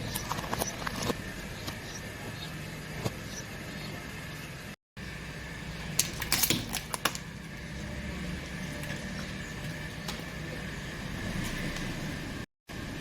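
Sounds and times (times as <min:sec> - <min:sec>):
sharp cracks: 0:05.0 - 0:12.4.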